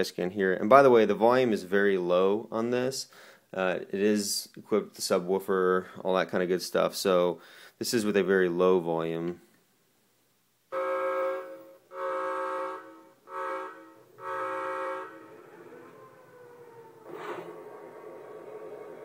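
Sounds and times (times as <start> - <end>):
locomotive horn blasts from speaker: 10.7 - 15.4
diesel engine sound: 12.9 - 19.0.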